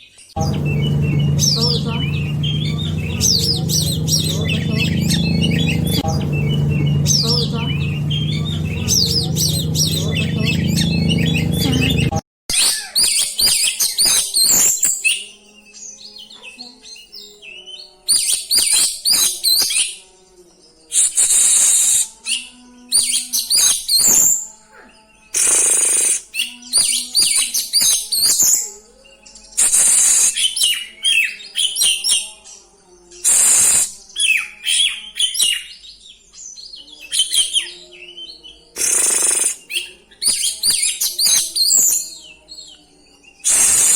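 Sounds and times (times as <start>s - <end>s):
magpie-robin singing: 34.2s - 43.9s.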